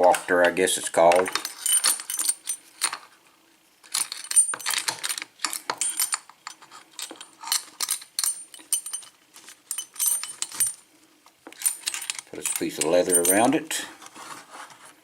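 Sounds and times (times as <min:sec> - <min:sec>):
padlocks clinking and rattling: 0:01.1 - 0:03.1, 0:03.8 - 0:10.8, 0:11.5 - 0:13.6.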